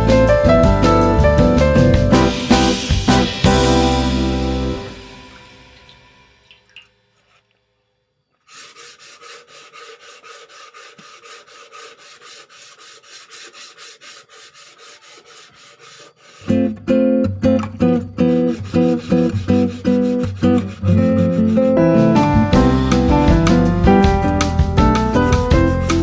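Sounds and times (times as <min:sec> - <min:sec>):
guitar music: 0:00.0 - 0:05.8, 0:16.5 - 0:26.0
hand sanding strokes: 0:08.4 - 0:16.7, 0:18.2 - 0:21.8.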